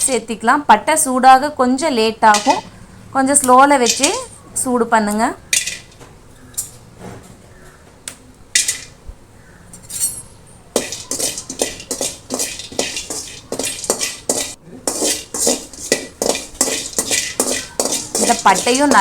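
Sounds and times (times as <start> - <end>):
metal spoon scraping pan: 2.3 - 4.4, 5.4 - 6.8, 9.8 - 19.0.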